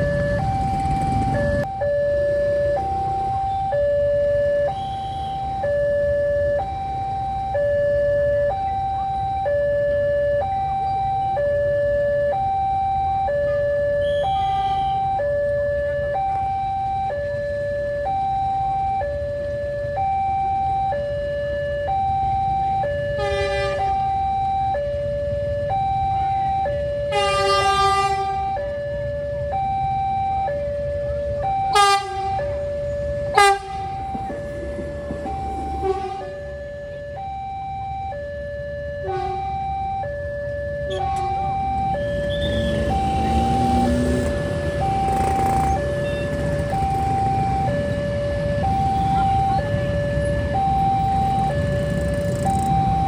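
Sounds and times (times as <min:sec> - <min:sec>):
traffic rumble: 0:00.0 - 0:53.0
two-tone crossing alarm siren: 0:00.0 - 0:53.0
short horn blasts: 0:27.1 - 0:28.4.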